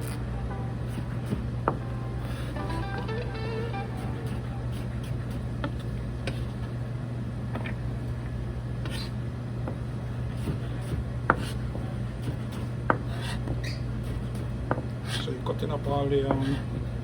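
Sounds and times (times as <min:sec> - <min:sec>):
knife chopping on cutting board: 0:00.9 - 0:02.4, 0:08.8 - 0:15.2.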